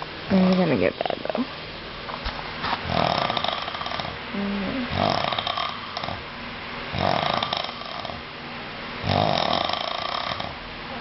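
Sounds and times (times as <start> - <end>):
man snoring heavily: 2.8 - 4.2, 4.9 - 6.2, 6.9 - 8.2, 9.0 - 10.6.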